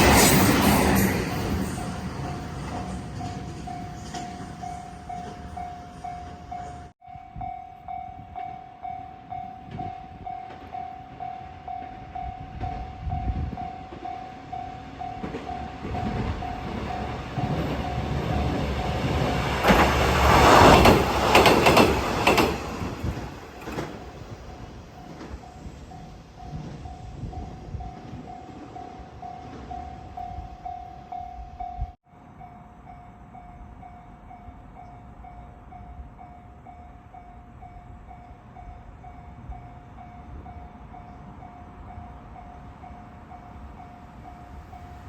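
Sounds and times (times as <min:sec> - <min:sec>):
train wheel clatter: 0:00.0 - 0:06.9, 0:15.0 - 0:30.3
diesel railcar engine: 0:00.0 - 0:45.0.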